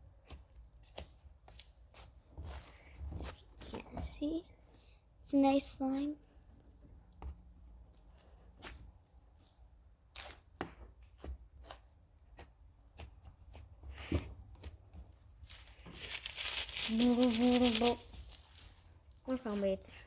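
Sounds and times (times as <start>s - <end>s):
rustling rattling noise: 15.4s - 19.0s.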